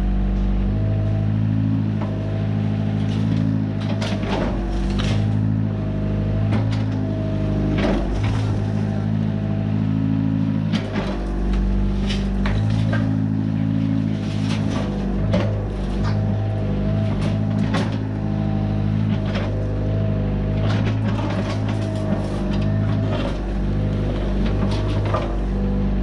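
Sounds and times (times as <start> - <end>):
excavator diesel engine running: 0.0 - 26.0
debris cracking and crunching: 20.6 - 25.7.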